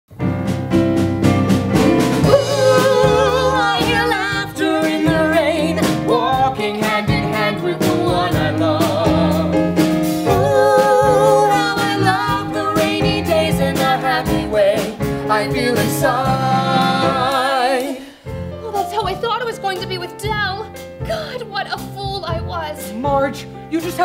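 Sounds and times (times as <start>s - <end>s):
instrumental accompaniment: 0.1s - 24.0s
person singing with vibrato: 2.2s - 9.6s, 10.3s - 18.2s.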